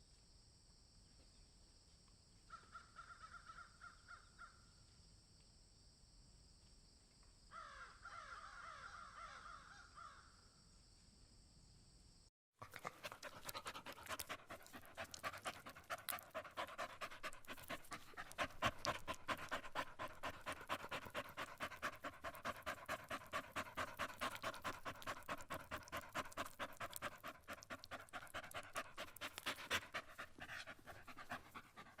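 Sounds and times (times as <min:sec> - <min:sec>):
dog panting: 0:12.6 - 0:32.0.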